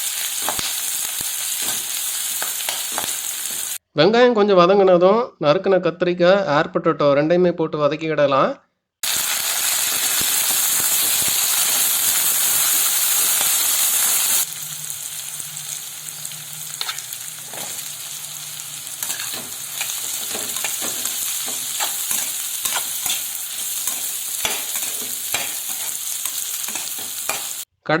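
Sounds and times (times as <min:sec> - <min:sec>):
spoon scraping and knocking pan: 0:00.0 - 0:03.8, 0:09.0 - 0:14.8, 0:15.4 - 0:27.7
vegetables sizzling in oil: 0:00.0 - 0:03.8, 0:09.0 - 0:27.7.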